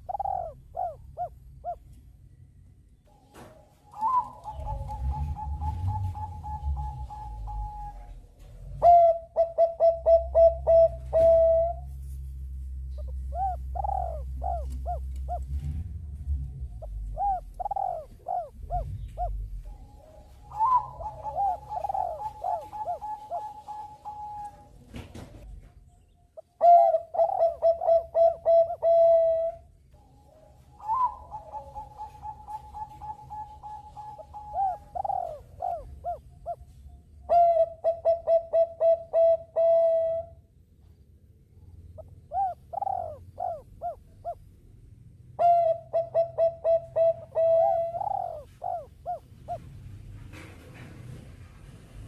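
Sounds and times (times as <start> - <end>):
doves cooing: 0.0 - 2.0, 3.1 - 12.2, 12.8 - 25.5, 26.4 - 40.5, 41.8 - 44.7, 45.3 - 52.0.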